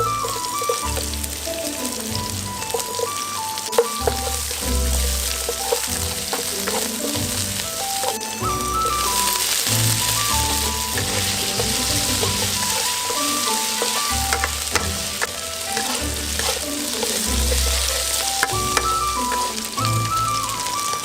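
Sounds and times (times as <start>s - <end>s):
food sizzling in hot oil: 0.0s - 21.0s
light background music: 0.0s - 21.0s
utensil clicking against pan: 3.8s - 8.4s, 9.1s - 20.0s.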